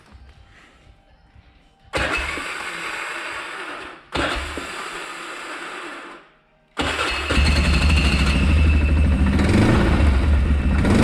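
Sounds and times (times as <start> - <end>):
engine catching: 2.0 - 6.0, 6.8 - 11.0
electric starter cranking: 2.0 - 6.2, 6.8 - 10.1.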